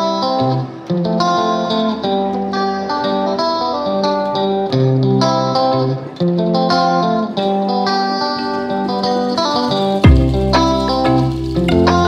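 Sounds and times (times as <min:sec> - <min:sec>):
plucked guitar tune: 0:00.0 - 0:12.0.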